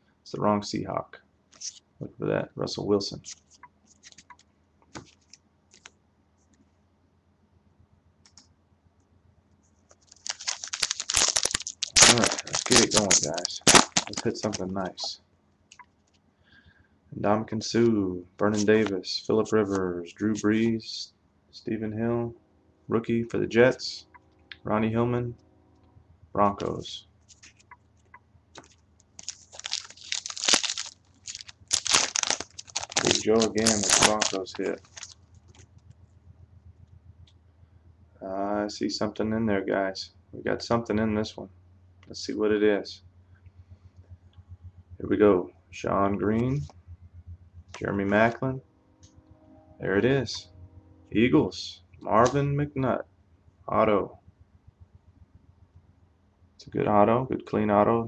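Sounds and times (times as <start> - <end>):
foil wrapper crinkling: 10.0 - 15.1, 28.6 - 35.7.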